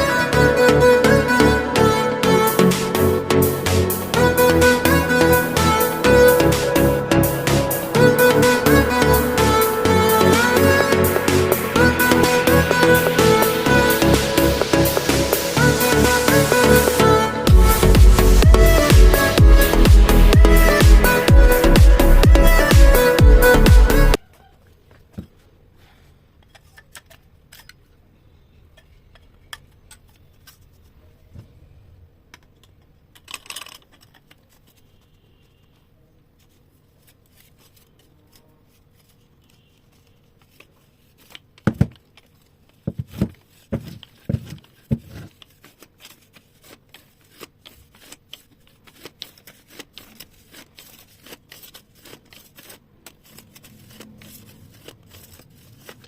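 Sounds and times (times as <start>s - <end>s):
small parts clicking and scraping: 26.4s - 31.0s, 32.3s - 56.0s.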